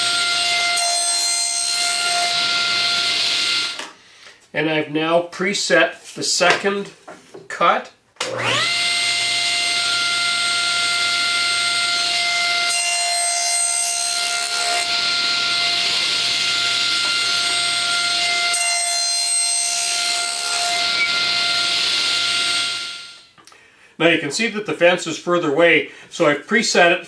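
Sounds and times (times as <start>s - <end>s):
saw cutting wood boards: 0.0s - 4.0s, 8.2s - 23.3s
table saw whining: 0.0s - 4.0s, 8.2s - 23.4s.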